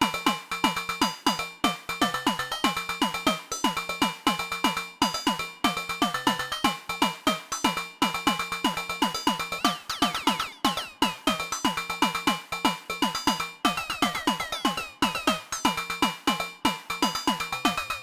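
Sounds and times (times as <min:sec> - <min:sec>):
analogue synth drum pattern: 0:07.4 - 0:15.8, 0:17.0 - 0:18.0.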